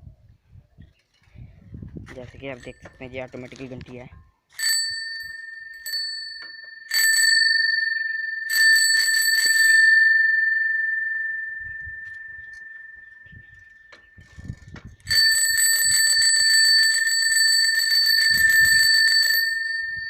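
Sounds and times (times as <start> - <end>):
bicycle bell ringing: 4.6 - 20.0.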